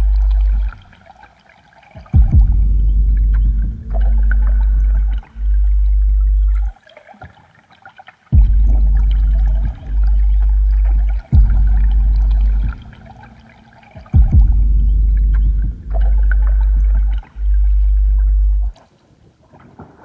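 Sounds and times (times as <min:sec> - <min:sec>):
deep bass drone: 0:00.0 - 0:00.9, 0:02.2 - 0:06.7, 0:08.4 - 0:18.8
watery gurgling texture: 0:00.0 - 0:18.8
sharp low thud: 0:02.2 - 0:06.7, 0:08.4 - 0:18.8.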